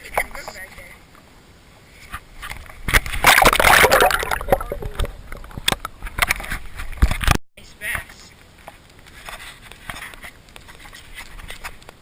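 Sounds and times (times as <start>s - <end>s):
fish splashing at water surface: 2.9s - 5.7s.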